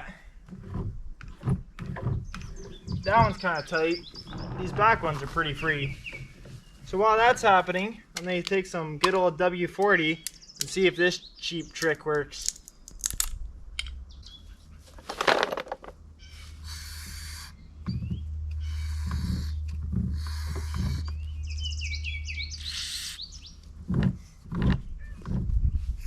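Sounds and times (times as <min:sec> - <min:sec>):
birds chirping: 0:01.8 - 0:12.9, 0:13.8 - 0:14.9, 0:16.1 - 0:23.8.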